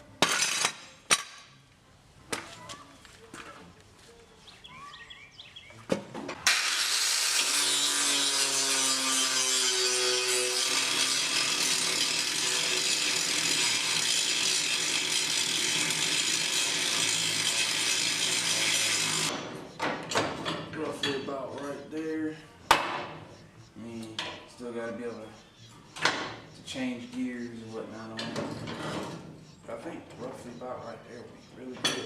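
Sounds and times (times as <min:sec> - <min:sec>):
power saw cutting steel: 0:06.4 - 0:19.4.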